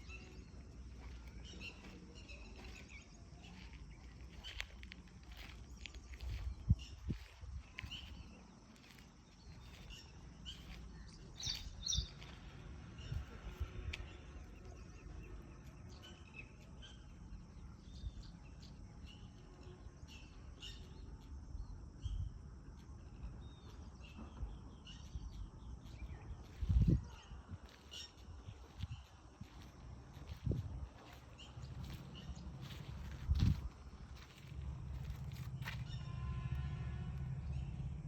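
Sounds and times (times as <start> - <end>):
birds chirping: 0.0 - 21.2, 23.0 - 38.0
low steady rumble: 28.3 - 38.0.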